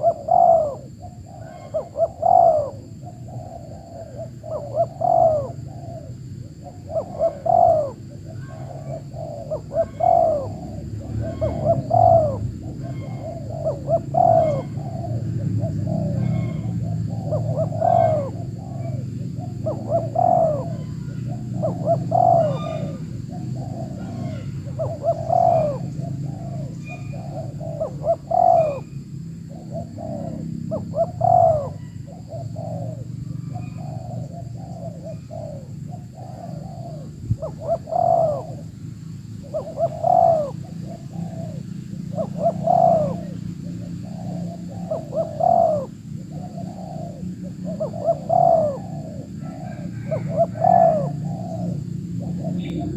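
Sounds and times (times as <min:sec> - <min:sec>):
doves cooing: 0:00.0 - 0:52.9.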